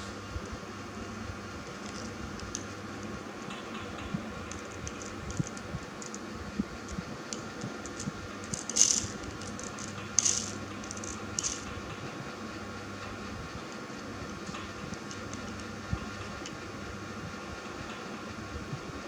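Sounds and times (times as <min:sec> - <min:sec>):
steady hum: 0:00.0 - 0:19.0
light clicks and rattles: 0:03.4 - 0:12.0.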